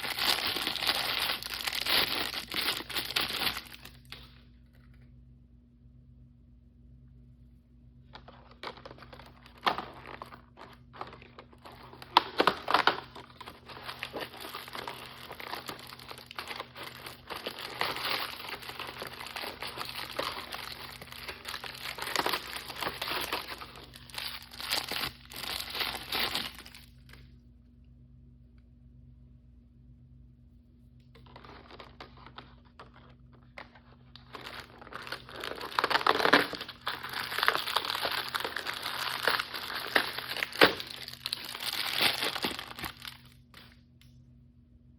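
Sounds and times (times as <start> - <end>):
plastic packaging crinkling: 0.0 - 4.3, 8.2 - 27.2, 31.3 - 43.7.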